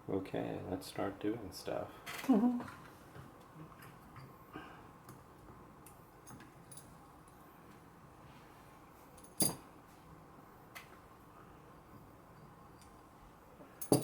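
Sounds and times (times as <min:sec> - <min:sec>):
small tool clicks and metallic clinks: 0:09.2 - 0:09.6, 0:13.8 - 0:14.0.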